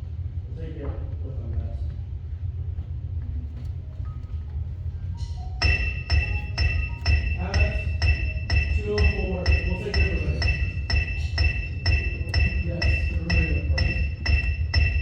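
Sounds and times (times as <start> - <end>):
steady low rumble: 0.0 - 15.0
mallet percussion notes: 5.4 - 15.0.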